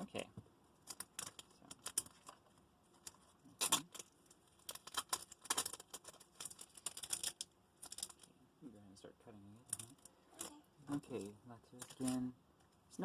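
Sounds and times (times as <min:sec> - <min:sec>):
trading cards rustling: 0:00.8 - 0:08.3.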